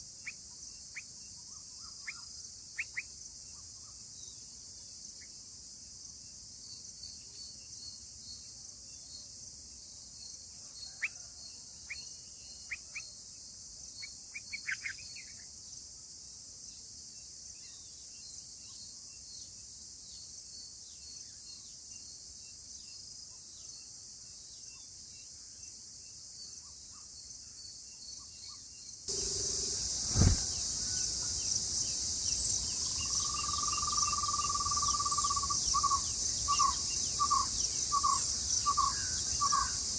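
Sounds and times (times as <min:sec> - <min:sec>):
insect chorus: 0:00.0 - 0:39.9
bird chirps: 0:32.6 - 0:39.9.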